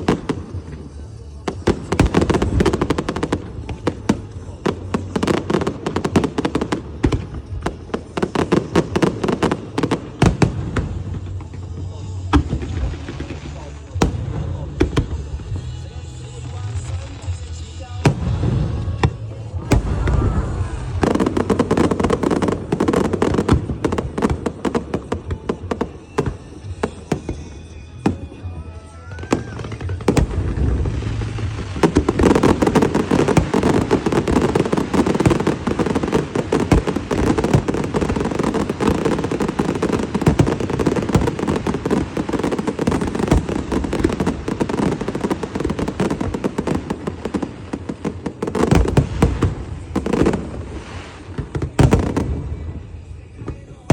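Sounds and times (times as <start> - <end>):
fireworks crackling: 0.0 - 53.9
rising firework whistle: 18.6 - 21.8.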